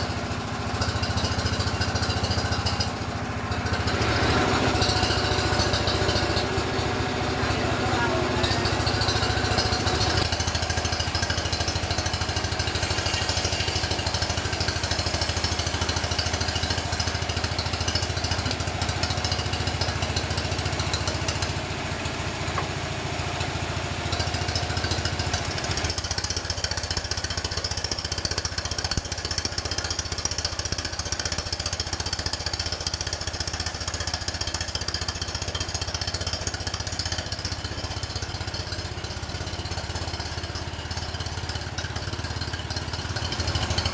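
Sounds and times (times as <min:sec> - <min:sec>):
motor low drone: 0:00.0 - 0:26.4.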